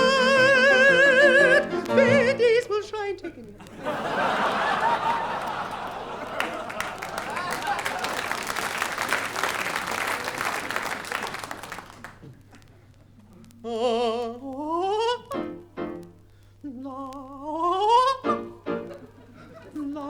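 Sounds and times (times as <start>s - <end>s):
audience applause: 3.8s - 12.6s.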